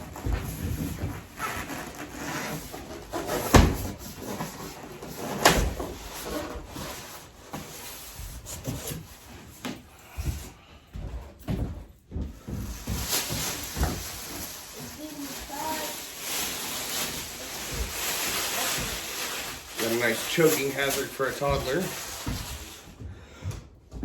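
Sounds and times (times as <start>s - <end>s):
packing material rustling and scraping: 0.0s - 10.1s, 12.4s - 23.0s.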